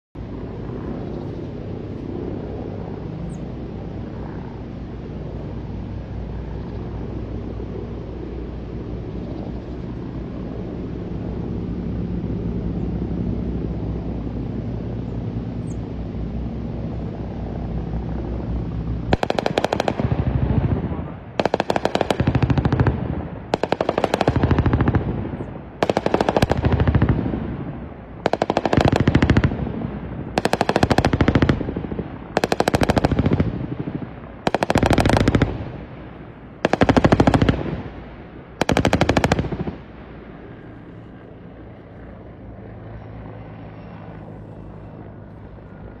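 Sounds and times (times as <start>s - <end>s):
helicopter hum: 0.2s - 46.0s
helicopter cannon bursts: 19.1s - 36.0s.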